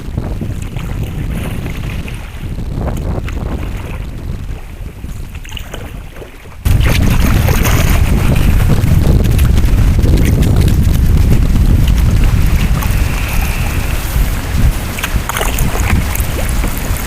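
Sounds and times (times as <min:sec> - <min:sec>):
wind buffeting microphone: 0:00.0 - 0:17.0.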